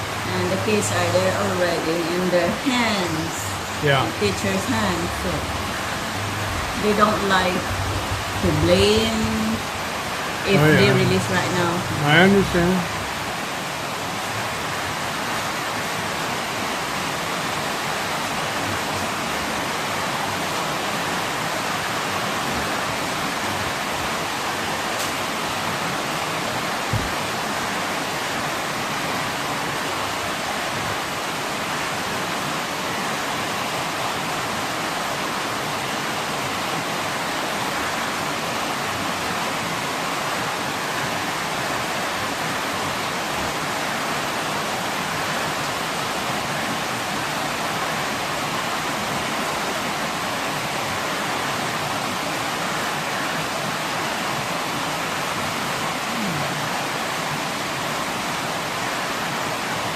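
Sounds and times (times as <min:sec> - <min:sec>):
heavy rain pouring: 0:00.0 - 0:59.9
short low thump: 0:26.9 - 0:27.2.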